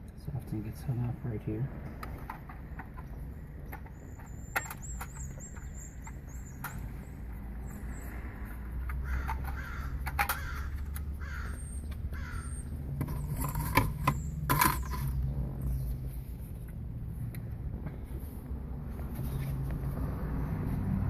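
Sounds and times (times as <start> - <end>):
plastic parts creaking and scraping: 8.6 - 12.0, 12.8 - 15.3.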